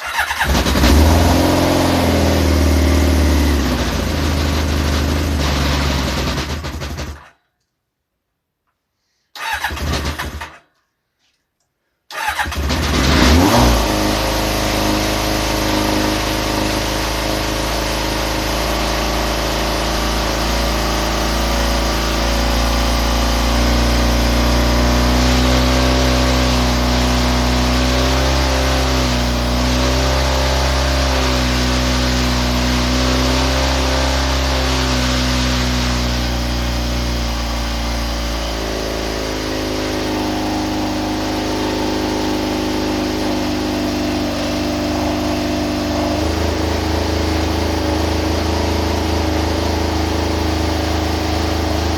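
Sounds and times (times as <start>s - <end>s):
engine cranking: 0.0s - 1.3s, 9.4s - 10.6s, 12.1s - 13.8s
engine idling: 14.2s - 31.6s, 44.8s - 51.9s.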